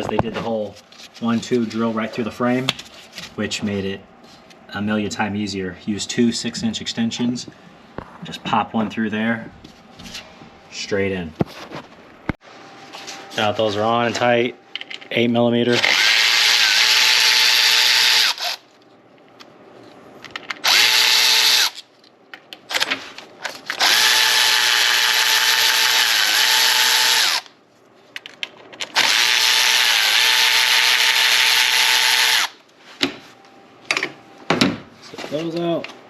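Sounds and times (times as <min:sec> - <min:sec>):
power drill motor whine: 0:15.8 - 0:18.6, 0:20.6 - 0:21.8, 0:23.7 - 0:27.5, 0:29.0 - 0:32.6.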